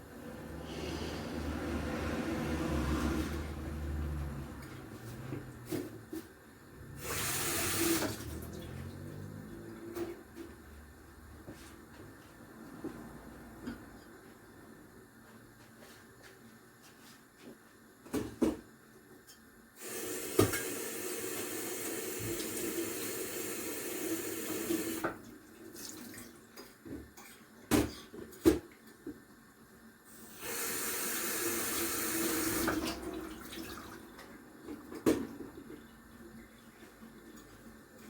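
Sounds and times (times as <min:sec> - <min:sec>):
tap water running into sink: 0:20.0 - 0:25.2, 0:30.5 - 0:34.0.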